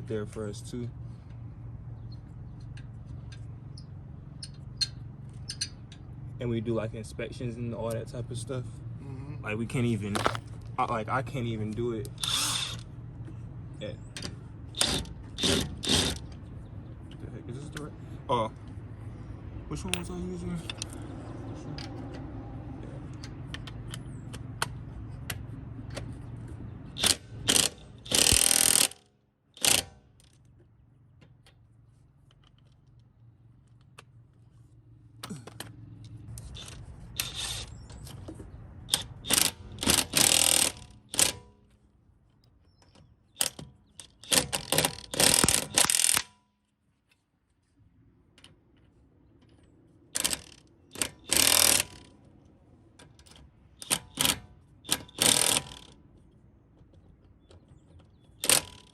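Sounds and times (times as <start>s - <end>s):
impact wrench bursts: 12.1s - 12.9s, 14.7s - 16.3s, 26.9s - 29.0s, 29.6s - 30.1s, 36.4s - 37.8s, 38.9s - 41.4s, 43.4s - 46.3s, 50.2s - 52.1s, 53.8s - 56.0s.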